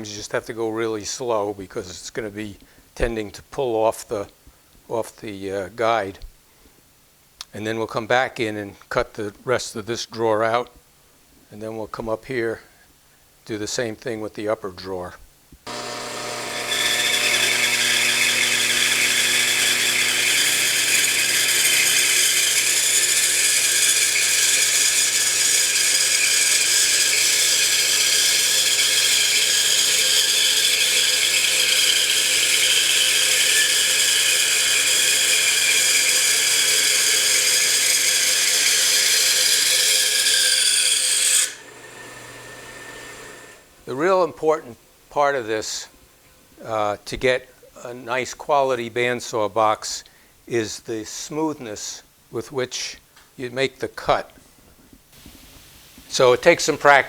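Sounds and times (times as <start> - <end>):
bandsaw cutting wood: 15.7 - 43.8.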